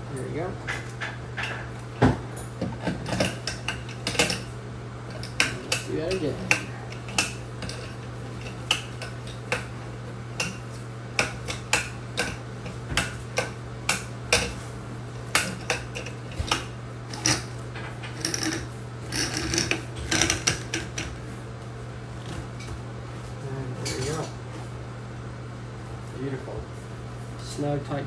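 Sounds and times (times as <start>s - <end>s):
steady low hum: 0.0s - 28.0s
metal spout clicking and clinking: 2.8s - 4.5s, 5.1s - 21.2s.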